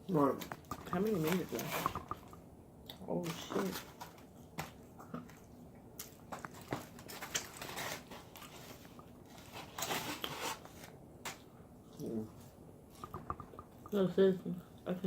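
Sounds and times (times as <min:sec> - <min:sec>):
biting and chewing food: 0:00.4 - 0:12.0.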